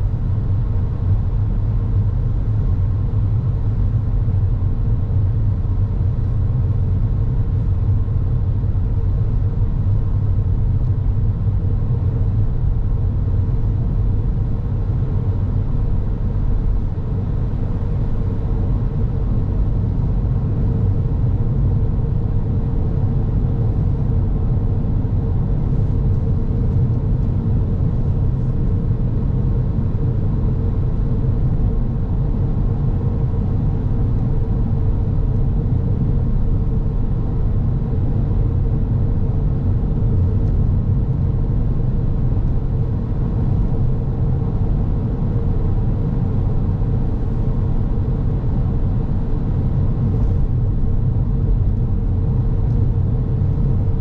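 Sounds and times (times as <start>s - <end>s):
car tyre and engine rumble: 0.0s - 54.0s
faint steady hum: 0.0s - 54.0s.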